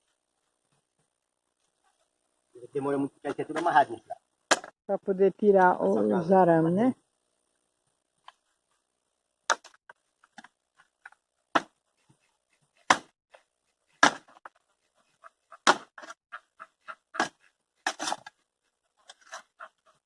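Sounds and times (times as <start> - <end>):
hoe striking wood: 11.5 - 11.8, 12.8 - 13.1, 14.0 - 14.5, 15.6 - 16.1.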